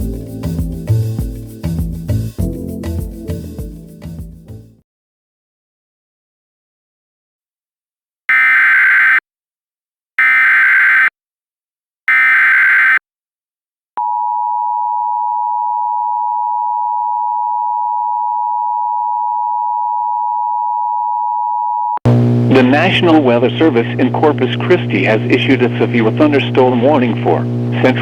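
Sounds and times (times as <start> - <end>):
digital header bursts: 8.3 - 9.2, 10.2 - 11.1, 12.1 - 13.0
two-tone attention signal: 8.3 - 9.2, 10.2 - 11.1, 12.1 - 13.0.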